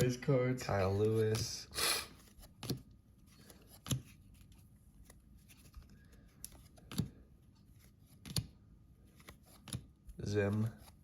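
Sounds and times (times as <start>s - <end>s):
trading cards tapping and clicking: 2.4s - 4.2s, 6.3s - 7.2s, 8.1s - 8.6s, 9.2s - 11.0s.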